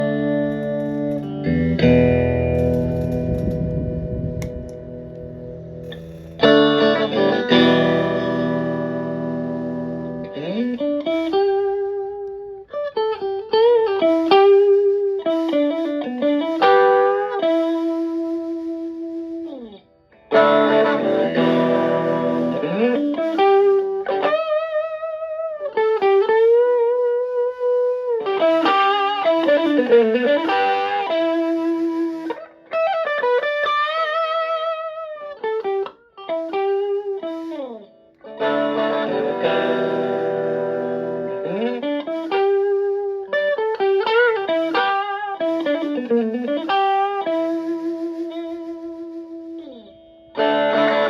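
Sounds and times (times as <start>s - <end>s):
overdriven electric guitar: 0.0s - 51.0s.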